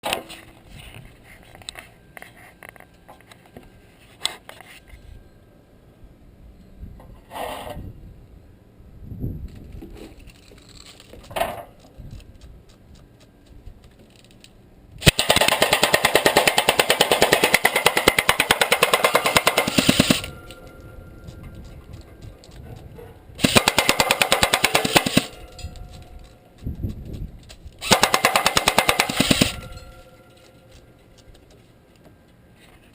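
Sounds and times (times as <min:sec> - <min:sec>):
airsoft gun automatic fire: 0:15.0 - 0:20.6, 0:23.4 - 0:25.7, 0:27.8 - 0:30.1.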